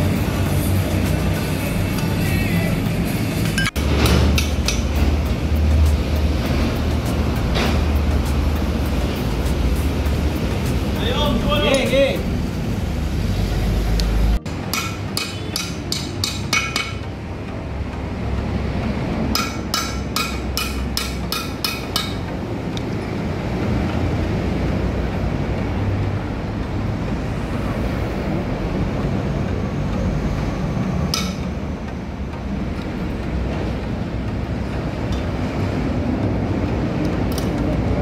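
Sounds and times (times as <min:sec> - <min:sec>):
hammer striking metal: 0:03.6 - 0:05.2, 0:14.4 - 0:17.3, 0:19.2 - 0:22.4, 0:31.0 - 0:32.0.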